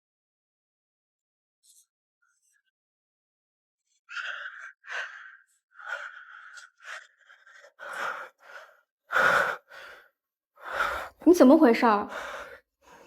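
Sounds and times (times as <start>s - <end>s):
person sighing and gasping: 4.1s - 11.1s.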